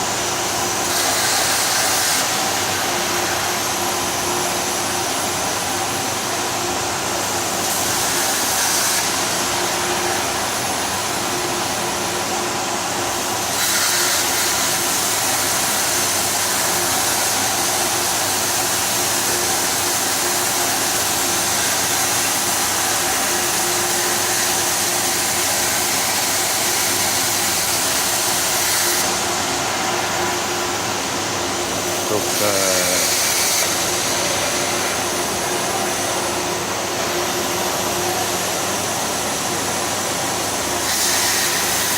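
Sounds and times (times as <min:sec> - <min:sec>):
plasma cutter hissing: 0:00.0 - 0:06.2, 0:07.0 - 0:41.9
constant mechanical hum: 0:00.0 - 0:41.9.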